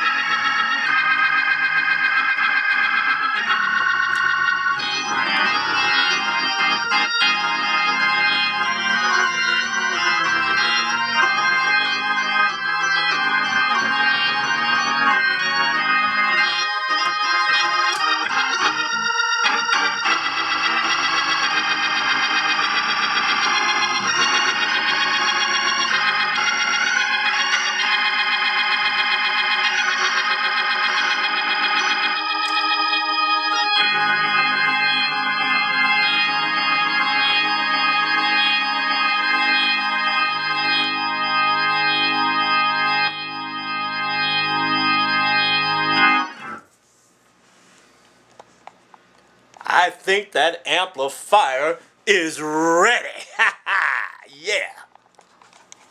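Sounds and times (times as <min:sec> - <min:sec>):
organ chords with wavering tone: 0:00.0 - 0:46.6.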